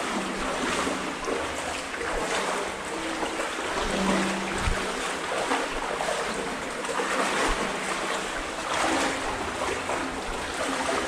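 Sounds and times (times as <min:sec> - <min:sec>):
legs wading through water: 0:00.0 - 0:11.0.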